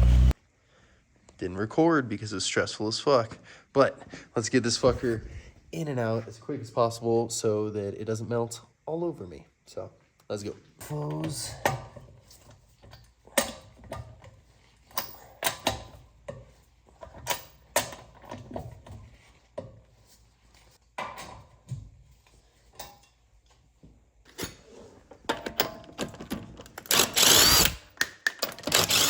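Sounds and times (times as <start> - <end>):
sharp clicks and knocks of tools: 25.3 - 29.0.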